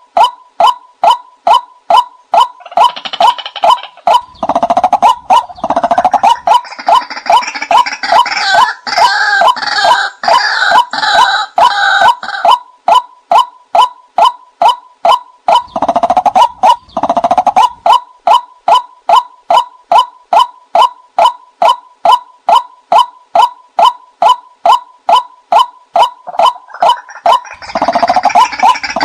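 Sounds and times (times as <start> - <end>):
short kwak bird calls: 0.2 - 29.0
harsh croaking chorus: 2.4 - 12.6, 14.6 - 19.6, 26.0 - 29.0
fast bird rattle: 2.6 - 8.5, 15.5 - 18.0, 26.6 - 29.0.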